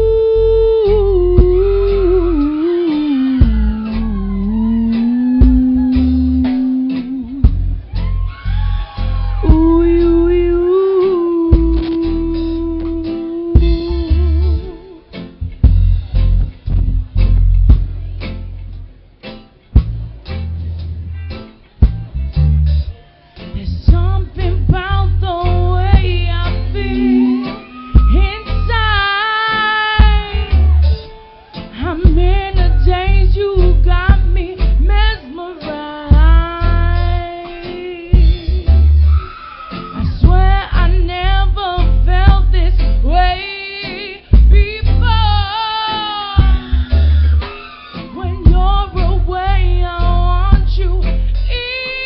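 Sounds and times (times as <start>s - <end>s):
woman singing: 0.0s - 7.5s, 9.4s - 15.1s, 23.6s - 30.8s, 31.7s - 38.8s, 40.1s - 46.7s, 48.1s - 52.0s
live band guitar and bass: 0.0s - 52.0s.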